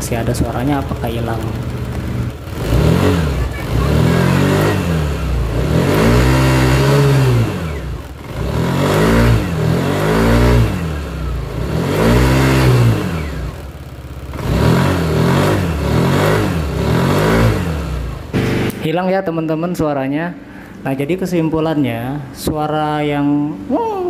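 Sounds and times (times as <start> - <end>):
scooter engine revving: 0.0 - 19.0.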